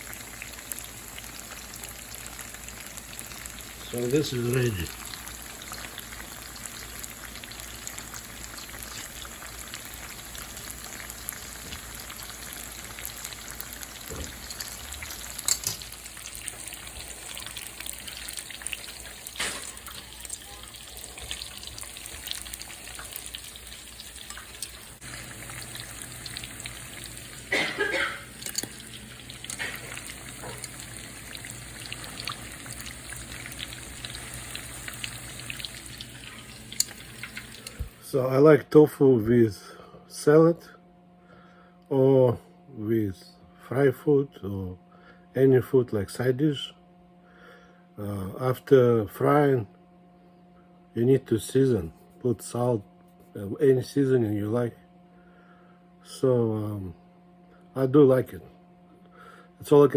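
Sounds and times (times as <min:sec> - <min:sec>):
deep-frying sizzle and crackle: 0:00.0 - 0:38.1.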